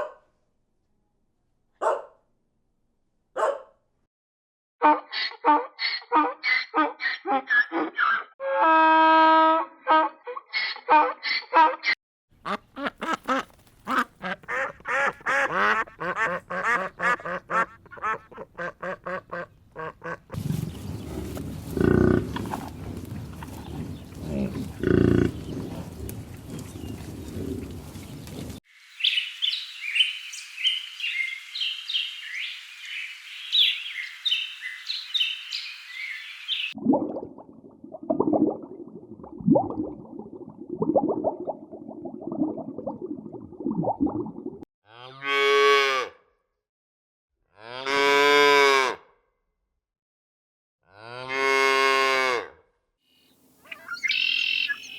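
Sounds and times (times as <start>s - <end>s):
ducks quacking: 12.4s - 20.4s
birds chirping: 20.6s - 36.8s, 53.2s - 54.9s
deep farm animal calls: 21.0s - 28.1s.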